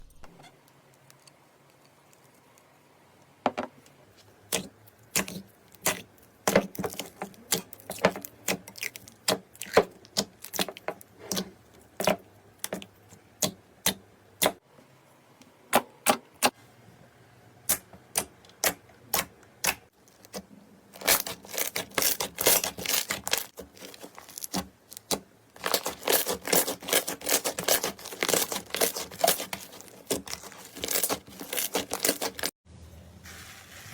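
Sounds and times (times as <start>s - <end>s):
rapid clicking and scratching: 21.0s - 32.5s.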